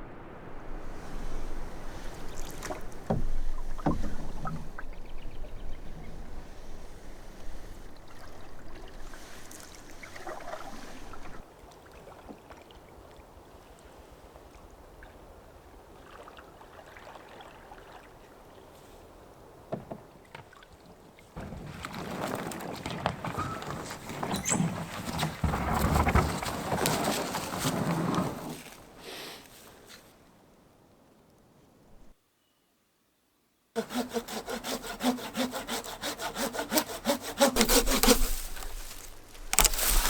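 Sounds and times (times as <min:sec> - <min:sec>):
paddle strokes: 0:00.0 - 0:12.6, 0:19.7 - 0:30.1, 0:33.8 - 0:40.0
water sloshing against hull: 0:00.0 - 0:29.0.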